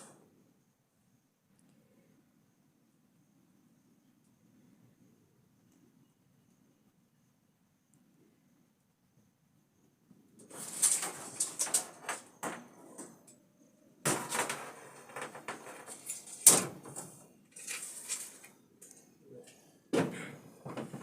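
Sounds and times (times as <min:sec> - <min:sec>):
scraping and rustling: 0:10.4 - 0:13.3, 0:14.1 - 0:18.5.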